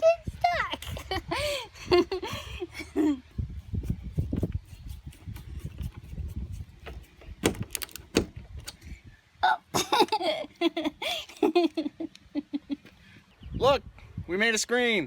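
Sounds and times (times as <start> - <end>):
person laughing: 0.6 - 3.3, 9.4 - 12.9
sharp clicks and knocks: 6.8 - 8.8.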